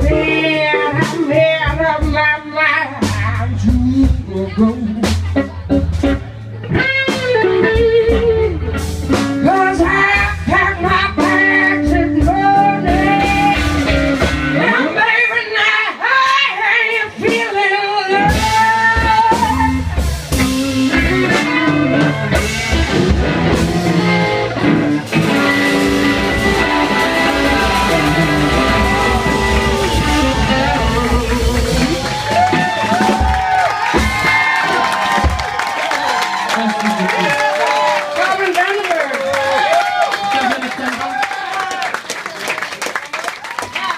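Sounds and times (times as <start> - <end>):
person singing: 0.0 - 6.1, 7.4 - 22.6, 25.2 - 33.3
blues-rock band playing: 0.0 - 39.8
electric guitar lead lines: 5.4 - 15.0, 18.2 - 33.4.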